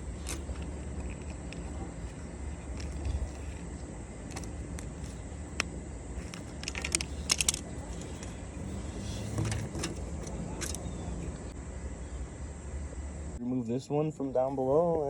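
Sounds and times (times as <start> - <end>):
metal tools clinking: 6.2 - 8.4, 9.0 - 11.0
metal parts jangling: 6.2 - 8.5, 9.2 - 10.9.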